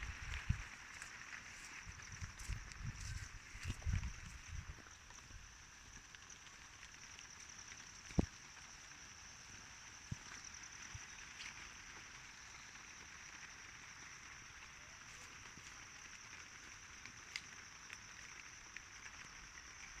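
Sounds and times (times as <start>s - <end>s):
light rain hiss: 0.0s - 20.0s
raindrops ticking: 3.8s - 20.0s.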